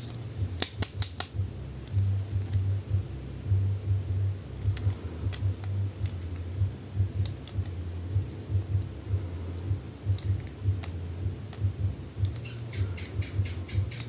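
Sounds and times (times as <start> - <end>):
plastic toy and packaging clicks: 0.0 - 1.4
low uneven rumble: 0.0 - 14.0.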